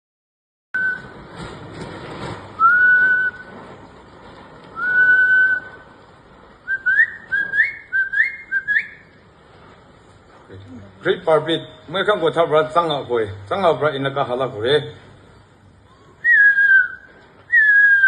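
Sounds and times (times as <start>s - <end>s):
person whistling bird call: 15.9s - 18.0s.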